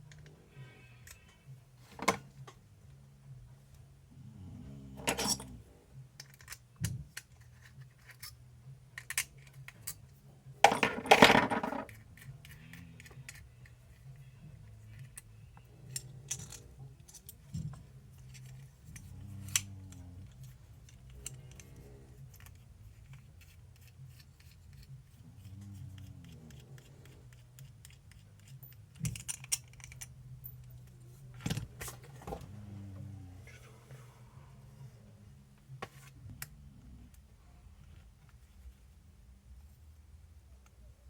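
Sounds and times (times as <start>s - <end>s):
metal parts clinking on bench: 5.0s - 5.6s, 10.6s - 13.5s, 14.9s - 23.2s, 26.0s - 30.9s.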